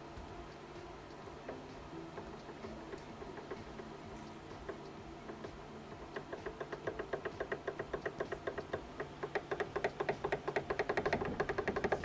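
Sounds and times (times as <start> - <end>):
steering rack knocking rapidly: 4.6 - 12.0.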